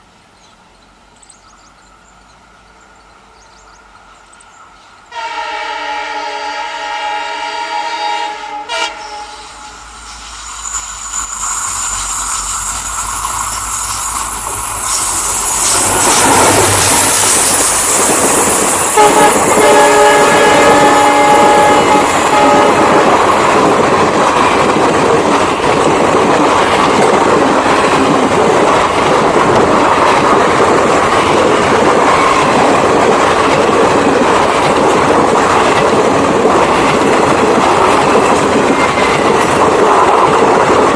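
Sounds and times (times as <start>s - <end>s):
diesel locomotive passing: 0.0s - 40.9s
train horn blast: 5.1s - 9.9s, 18.9s - 23.2s.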